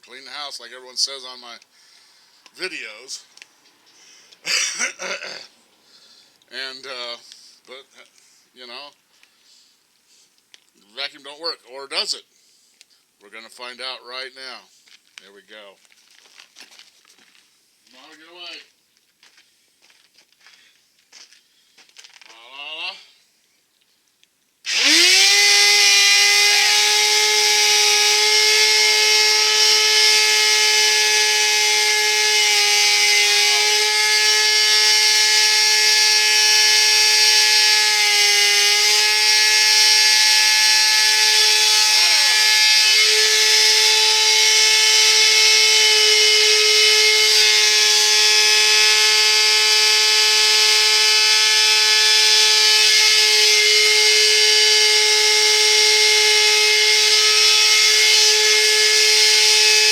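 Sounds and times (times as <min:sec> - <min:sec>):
vacuum cleaner motor whine: 0:24.7 - 0:59.9.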